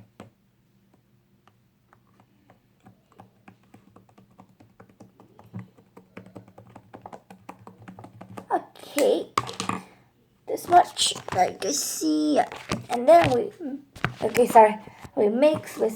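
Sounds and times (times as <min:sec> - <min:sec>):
slime clicking and tapping: 0:01.5 - 0:09.8, 0:12.4 - 0:15.8.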